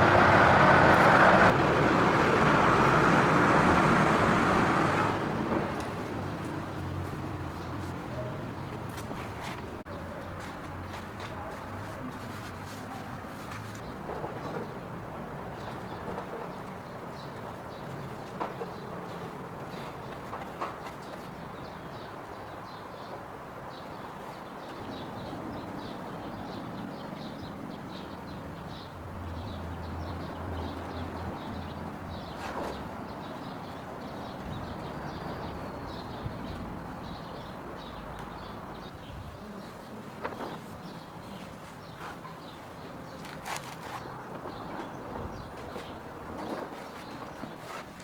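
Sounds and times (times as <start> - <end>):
small birds chirping: 16.8 - 47.8.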